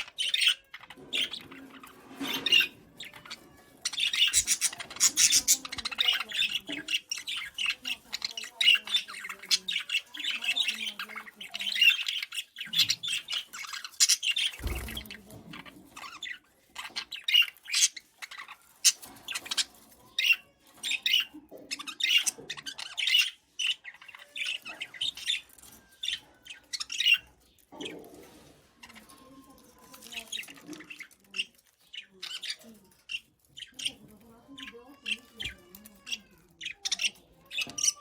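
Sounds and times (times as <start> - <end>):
bird squawks and chirps: 0.0 - 15.1, 15.9 - 38.0.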